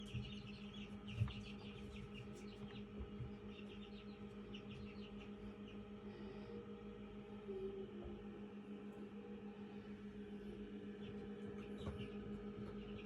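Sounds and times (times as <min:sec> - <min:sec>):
chick peeping: 0:00.0 - 0:06.0, 0:10.5 - 0:13.0
steady low hum: 0:00.0 - 0:13.0.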